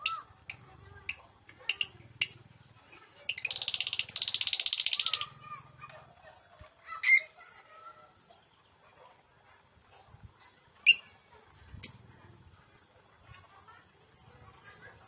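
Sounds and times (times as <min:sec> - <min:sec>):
bird chattering call: 0:00.0 - 0:02.4, 0:03.3 - 0:05.4
high bird chirp: 0:00.0 - 0:02.4, 0:03.3 - 0:05.4, 0:10.9 - 0:11.1.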